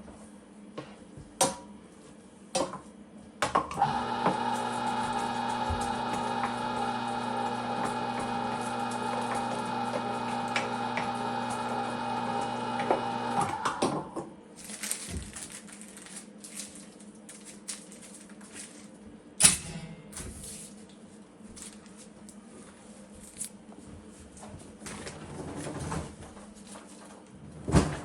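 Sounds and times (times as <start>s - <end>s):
electric meat grinder humming: 3.8s - 14.2s.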